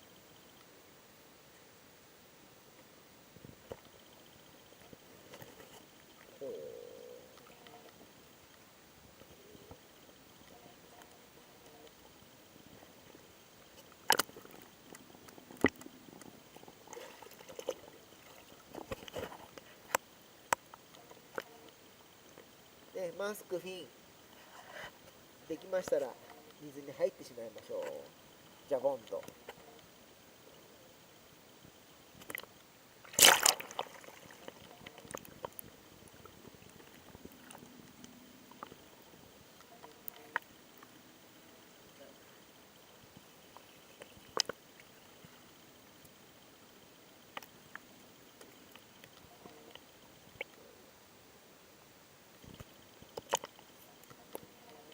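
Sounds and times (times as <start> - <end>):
water drips: 32.2 - 41.0
big water splash: 33.1 - 34.5.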